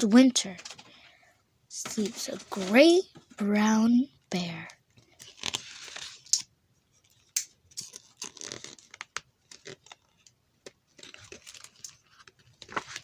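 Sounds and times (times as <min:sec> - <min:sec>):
paper pages rustling: 0:01.8 - 0:03.0, 0:05.0 - 0:06.4, 0:07.9 - 0:10.3, 0:10.9 - 0:13.0.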